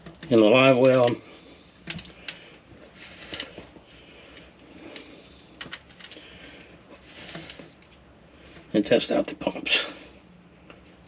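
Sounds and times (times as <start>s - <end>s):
light clicks of wires and fittings: 0.0s - 1.2s.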